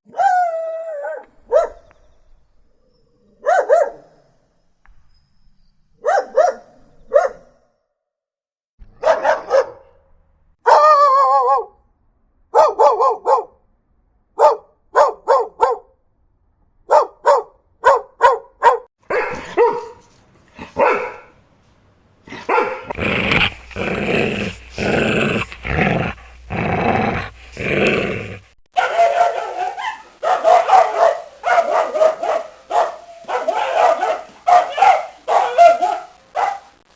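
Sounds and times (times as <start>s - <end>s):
dogs barking: 3.4s - 4.0s, 6.0s - 7.5s, 8.8s - 10.9s, 14.4s - 15.8s, 16.9s - 20.0s, 20.6s - 21.4s, 22.3s - 23.0s, 28.8s - 36.8s.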